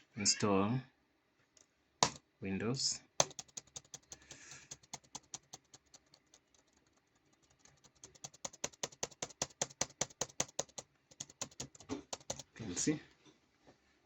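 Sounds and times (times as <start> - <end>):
typing on computer keyboard: 3.2 - 12.5.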